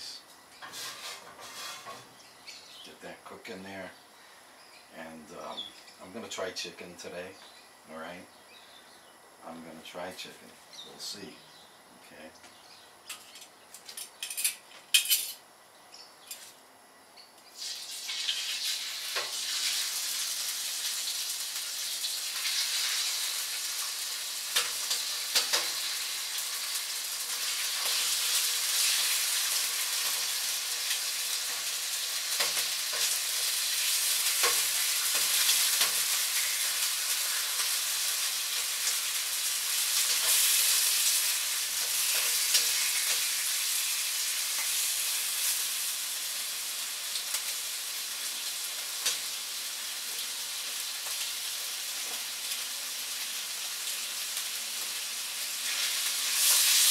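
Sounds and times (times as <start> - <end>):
chicken sizzling in hot oil: 17.5 - 56.9.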